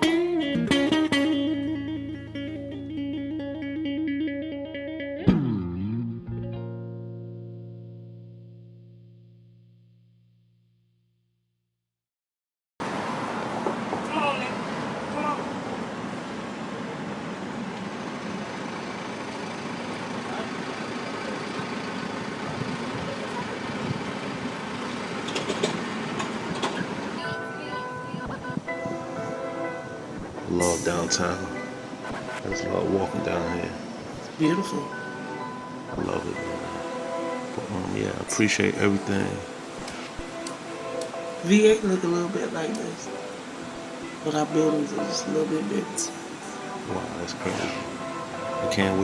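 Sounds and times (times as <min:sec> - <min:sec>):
guitar hit with pitch dip: 0:00.0 - 0:10.4
picked guitar line: 0:00.0 - 0:10.4, 0:27.2 - 0:49.0
guitar chord ringing: 0:00.0 - 0:11.0, 0:27.2 - 0:49.0
city street traffic: 0:12.8 - 0:49.0.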